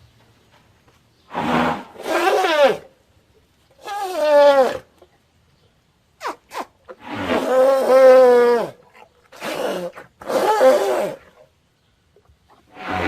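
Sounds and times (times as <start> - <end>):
elephant calling: 1.3 - 2.9, 6.2 - 11.4
elephant squeaks: 1.4 - 2.8, 9.3 - 11.4.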